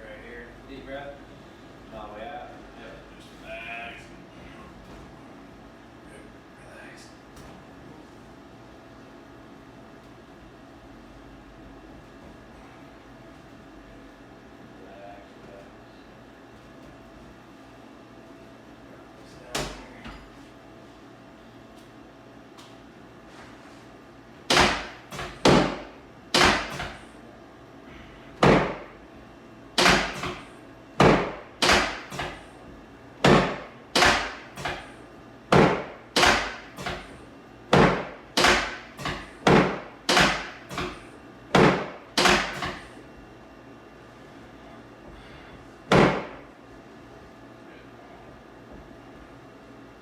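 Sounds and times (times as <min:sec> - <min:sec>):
sharp knocks of chiropractic adjustment: 0:24.5 - 0:27.0, 0:28.4 - 0:28.9, 0:29.8 - 0:32.4, 0:33.2 - 0:34.9, 0:35.5 - 0:37.1, 0:37.7 - 0:42.9, 0:45.9 - 0:46.5.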